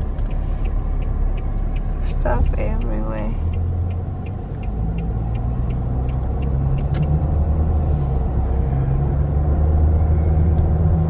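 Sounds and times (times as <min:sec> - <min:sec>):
light even ticking: 0:00.0 - 0:07.8
car engine and road noise: 0:00.0 - 0:11.0.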